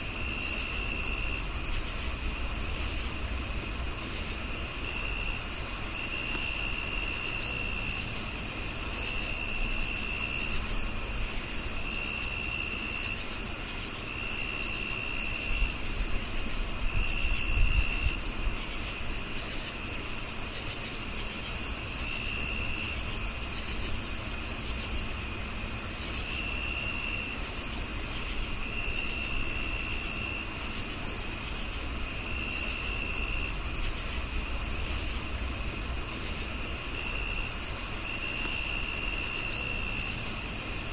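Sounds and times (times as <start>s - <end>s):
cricket lower trill: 0.0s - 40.9s
cricket regular chirp: 0.0s - 40.9s.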